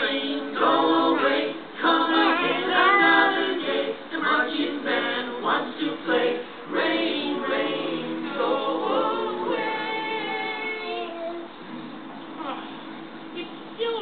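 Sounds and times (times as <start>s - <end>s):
vocal quartet singing in harmony: 0.0s - 11.2s.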